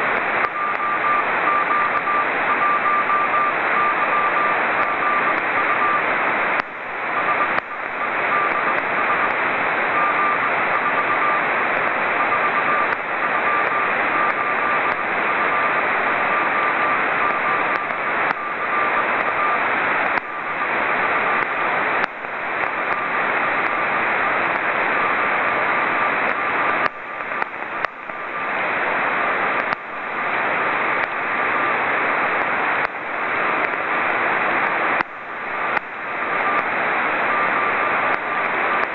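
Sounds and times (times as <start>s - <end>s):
radio receiver hiss: 0.0s - 38.9s
faint morse code beeping: 0.3s - 28.5s.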